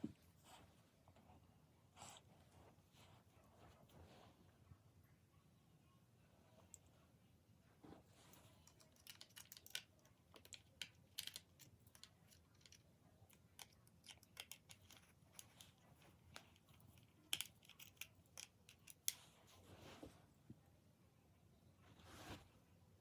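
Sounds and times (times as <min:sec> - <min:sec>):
toy parts clicking and tapping: 0:08.8 - 0:15.6.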